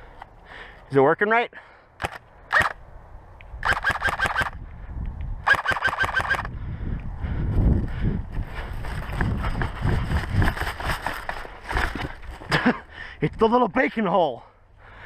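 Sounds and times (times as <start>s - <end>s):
wind rumble on microphone: 2.8s - 13.4s
rapid airsoft gunfire: 3.6s - 4.6s, 5.4s - 6.5s.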